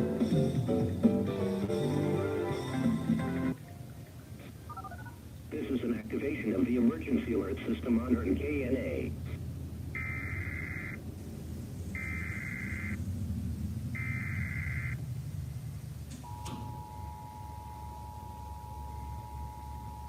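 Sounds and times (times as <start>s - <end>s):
low background rumble: 3.6s - 20.0s
buzzy digital data tones: 10.0s - 11.0s, 12.0s - 13.0s, 14.0s - 15.0s
two-tone attention signal: 16.2s - 20.0s.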